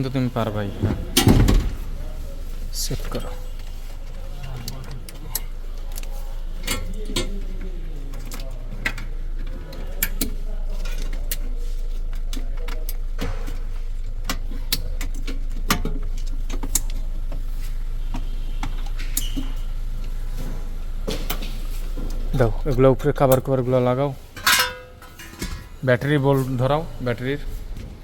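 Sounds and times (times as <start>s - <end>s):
steady low hum: 0.0s - 28.0s
metallic clicks and clanks: 24.3s - 25.8s.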